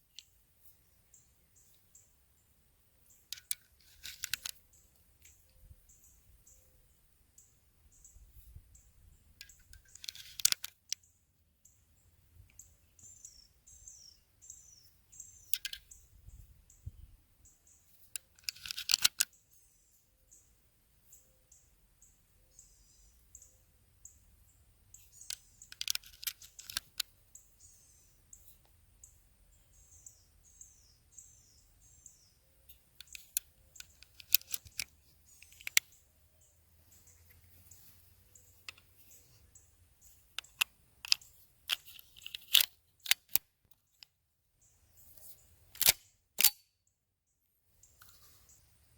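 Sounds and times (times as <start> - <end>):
clicks and rattles of hard objects: 3.3 - 4.6, 9.4 - 11.0, 18.1 - 19.3, 25.2 - 27.1, 33.0 - 35.9, 40.4 - 44.1.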